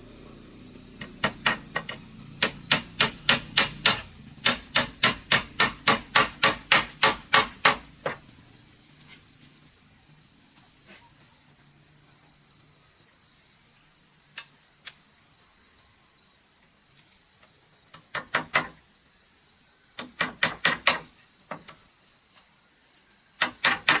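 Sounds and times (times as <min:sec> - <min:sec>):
hammer blows on wood: 0:01.0 - 0:08.2.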